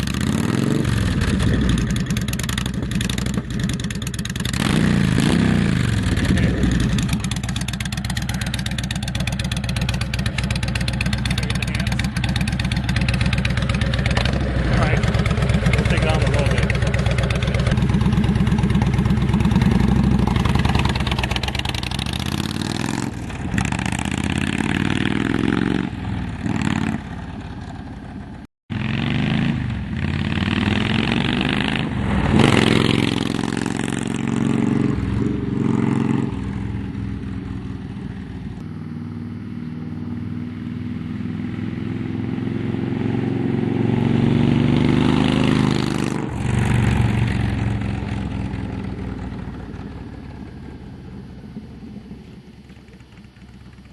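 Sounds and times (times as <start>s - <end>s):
motorcycle engine revving: 0.0s - 53.9s.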